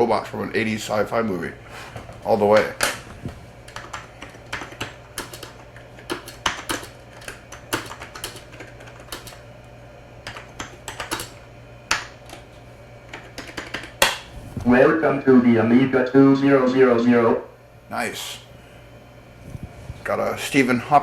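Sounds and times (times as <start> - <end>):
steady low hum: 0.0 - 21.0
computer keyboard key clicks: 3.7 - 9.4, 10.2 - 12.4, 13.1 - 14.2.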